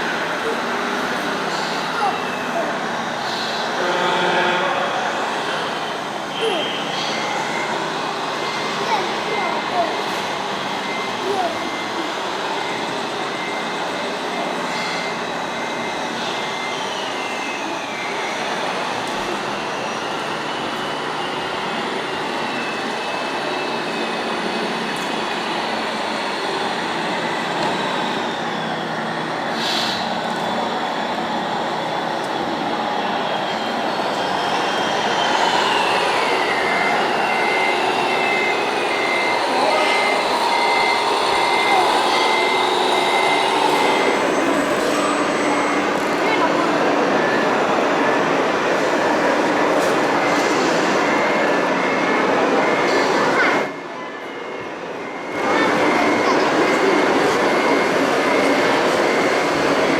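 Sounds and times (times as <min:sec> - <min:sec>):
electric motors whining: 0:00.0 - 0:53.6
small electric motors whining: 0:35.0 - 0:46.6.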